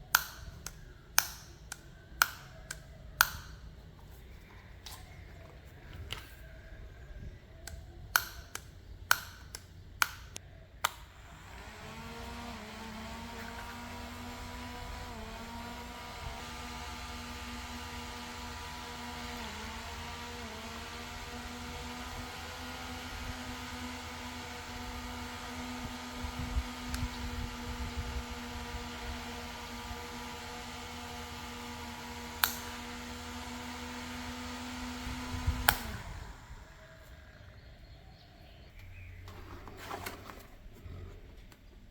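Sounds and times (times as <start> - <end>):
sharp clicks: 0.0 - 3.8, 7.6 - 12.4, 32.4 - 32.8, 35.5 - 37.2
small fan motor whirring: 0.0 - 38.7.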